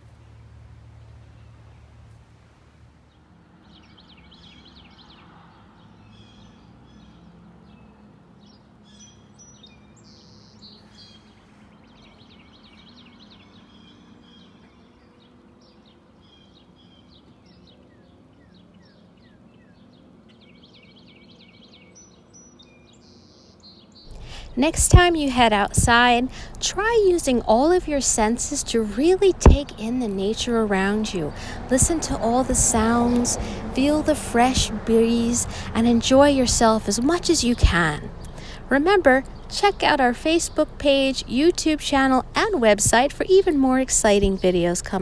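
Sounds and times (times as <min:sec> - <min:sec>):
songbirds chirping: 0:00.0 - 0:45.0
faint low rumble: 0:24.1 - 0:45.0.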